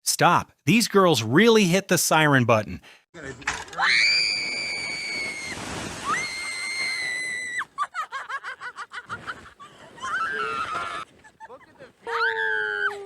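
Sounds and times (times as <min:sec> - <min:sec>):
woman screaming: 0:12.1 - 0:13.0.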